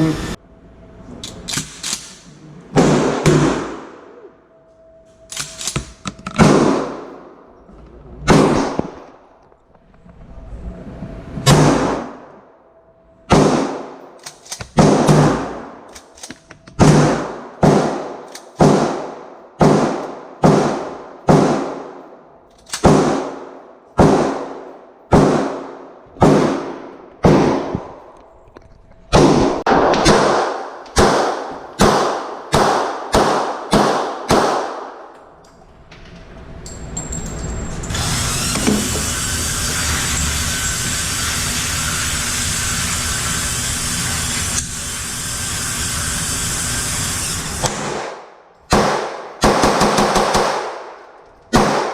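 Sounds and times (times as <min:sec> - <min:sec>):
gunshots: 0:01.6 - 0:04.1, 0:05.3 - 0:07.3, 0:08.3 - 0:09.1, 0:11.5 - 0:12.3, 0:13.3 - 0:14.0, 0:14.7 - 0:15.9, 0:16.8 - 0:22.1, 0:22.8 - 0:28.0, 0:29.1 - 0:35.1, 0:47.4 - 0:51.9.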